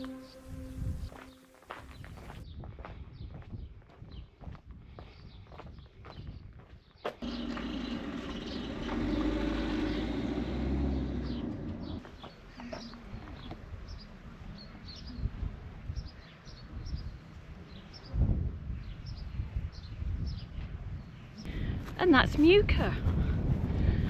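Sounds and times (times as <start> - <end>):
small birds chirping: 10.8 - 18.2.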